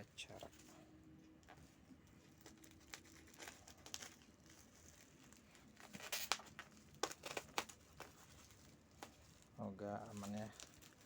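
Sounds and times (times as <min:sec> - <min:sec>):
packaging crinkling: 0:02.4 - 0:11.0.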